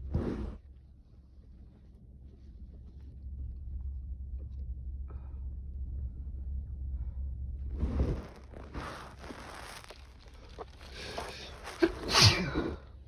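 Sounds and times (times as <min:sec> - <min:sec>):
low rumble: 0:02.1 - 0:13.0
man sneezing: 0:11.8 - 0:12.8.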